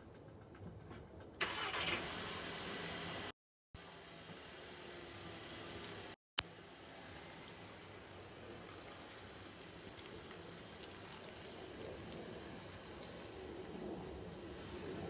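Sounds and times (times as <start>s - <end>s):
car tyre road noise: 1.4s - 15.0s.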